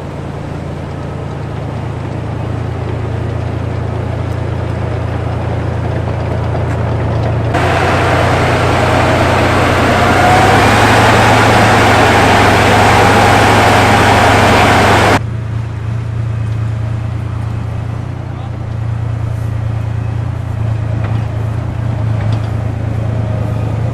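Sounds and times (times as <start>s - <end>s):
harsh loud engine noise with whine: 0.0s - 23.9s
tank diesel engine droning: 0.0s - 23.9s.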